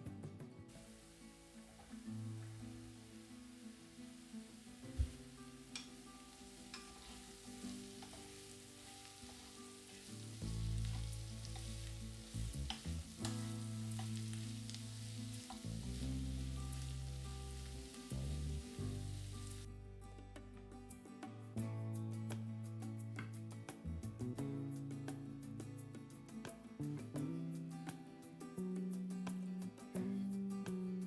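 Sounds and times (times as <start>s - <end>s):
food sizzling in oil: 0.7s - 19.7s
utensil clicking against pan: 5.6s - 17.8s.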